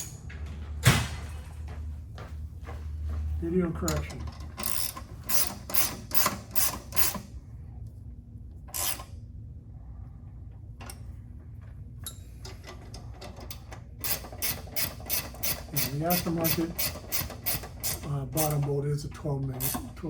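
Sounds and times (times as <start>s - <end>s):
ratchet wrench clicking: 3.9s - 7.2s, 8.7s - 9.1s, 13.5s - 18.6s.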